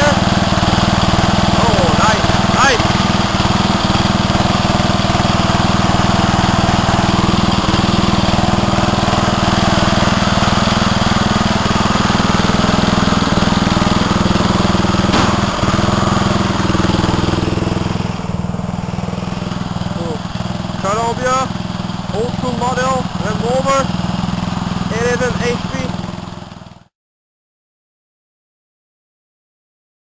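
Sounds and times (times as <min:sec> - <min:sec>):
lawnmower engine running: 0:00.0 - 0:26.9.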